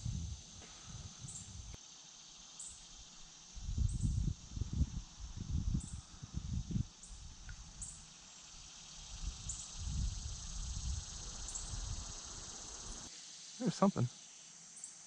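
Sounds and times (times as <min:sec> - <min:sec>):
wind gusts on microphone: 0:00.0 - 0:01.8, 0:03.6 - 0:07.9, 0:09.0 - 0:13.0
steady high hiss: 0:00.0 - 0:15.0.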